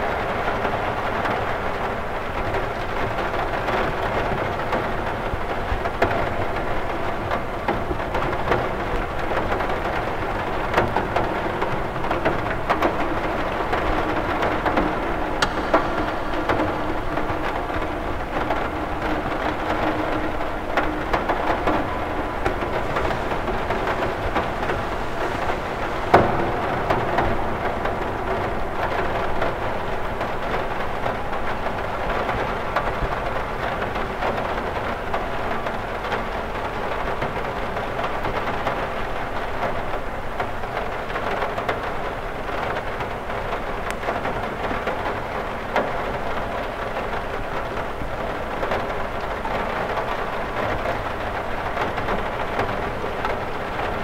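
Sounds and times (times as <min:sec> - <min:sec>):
rain on window glass: 0:00.0 - 0:54.0
sharp knock: 0:15.4 - 0:19.8.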